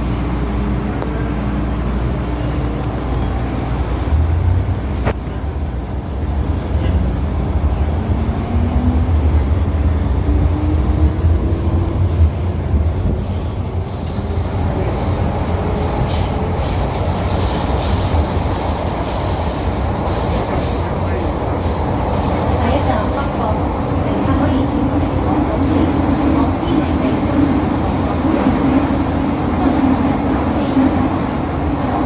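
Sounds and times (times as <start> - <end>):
train wheels rumbling on rail: 0.0 - 32.0
hissing rail noise: 10.2 - 32.0.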